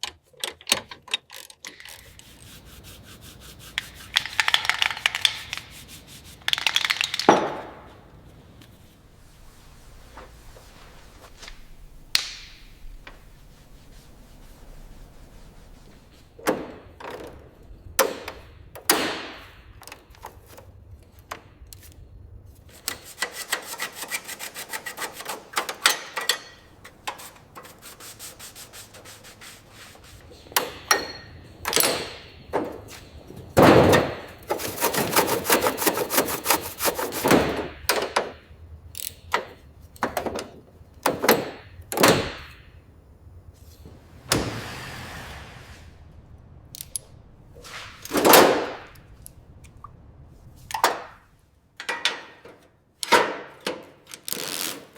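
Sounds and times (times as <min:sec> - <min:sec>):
fast scrubbing strokes: 0:02.0 - 0:07.1, 0:12.7 - 0:16.4, 0:23.0 - 0:25.6, 0:26.7 - 0:31.6, 0:32.3 - 0:37.8, 0:43.9 - 0:46.3
knocks and clinks: 0:30.5 - 0:37.4.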